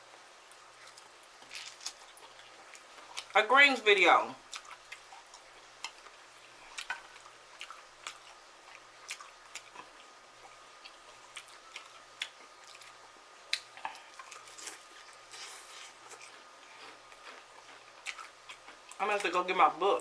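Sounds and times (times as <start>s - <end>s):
chewing and wet mouth smacks: 4.5s - 19.4s.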